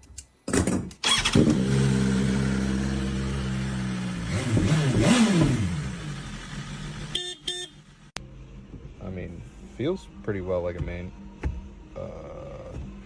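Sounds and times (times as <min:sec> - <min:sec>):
car engine starting and idling: 0:01.0 - 0:13.0
car engine revving: 0:01.1 - 0:07.2.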